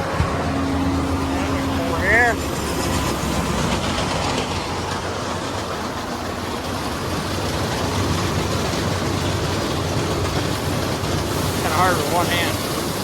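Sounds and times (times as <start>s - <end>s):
farm machinery engine droning: 0.0s - 13.0s.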